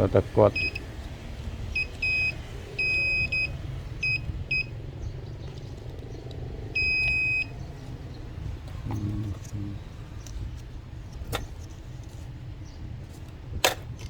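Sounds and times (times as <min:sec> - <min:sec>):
steady low rumble: 0:00.0 - 0:14.0
high electronic beeps: 0:01.8 - 0:04.7.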